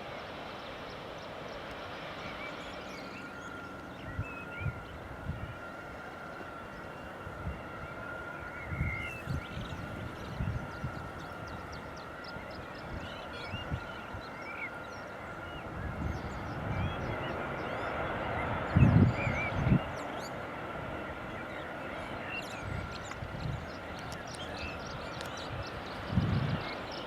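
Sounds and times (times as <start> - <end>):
distant aircraft engine hum: 0.0 - 27.0.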